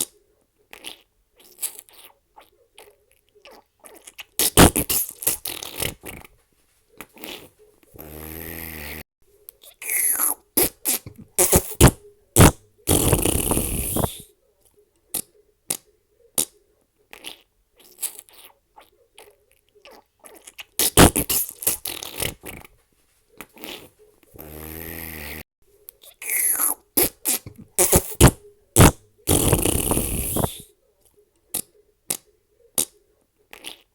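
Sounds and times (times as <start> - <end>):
fart sound effects: 4.4 - 6.3, 7.2 - 9.0, 9.8 - 14.2, 20.8 - 22.7, 23.6 - 25.4, 26.2 - 30.6.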